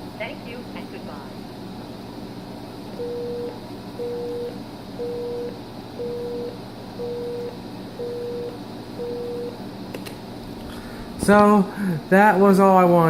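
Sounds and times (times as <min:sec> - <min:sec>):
telephone busy signal beeps: 0:03.0 - 0:09.6.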